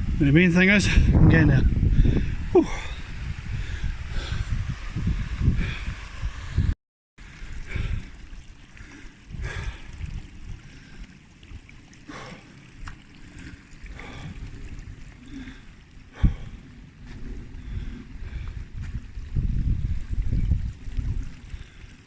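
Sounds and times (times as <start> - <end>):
wind buffeting microphone: 0.0 - 22.0
splashy footsteps on wet ground: 17.0 - 19.1.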